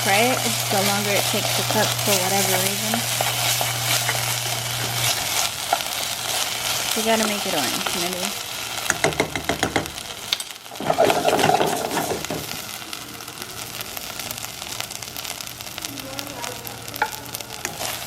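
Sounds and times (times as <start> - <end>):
rice sizzling in a pan: 0.0 - 18.0
spoon stirring and scraping: 0.2 - 8.1.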